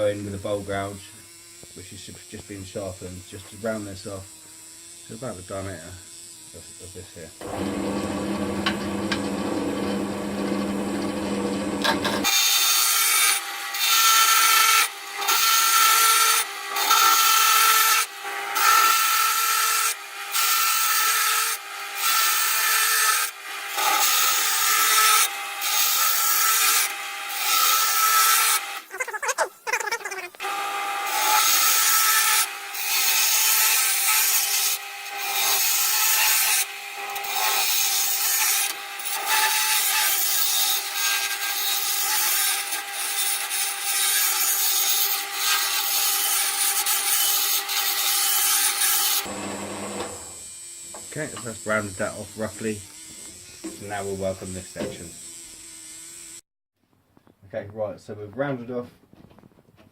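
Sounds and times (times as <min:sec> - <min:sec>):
wood lathe spinning: 0:06.8 - 0:56.4.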